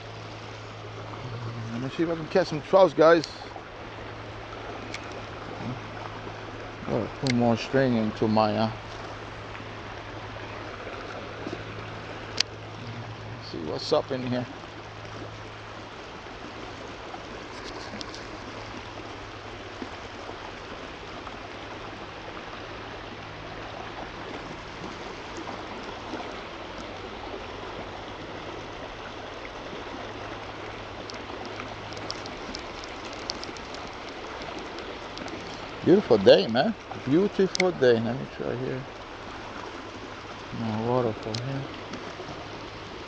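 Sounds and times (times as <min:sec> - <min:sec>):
stream water flowing: 0:00.0 - 0:43.0
faint clicks: 0:04.9 - 0:05.2, 0:17.6 - 0:18.3, 0:31.0 - 0:35.7, 0:37.4 - 0:37.8, 0:41.2 - 0:42.1.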